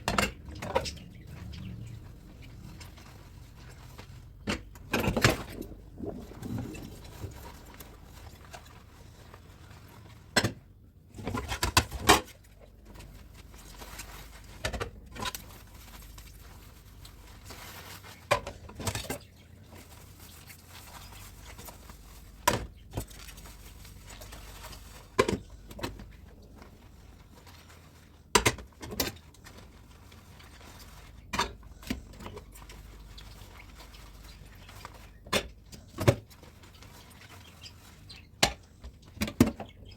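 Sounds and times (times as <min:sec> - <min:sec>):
low steady background noise: 0:00.0 - 0:39.9.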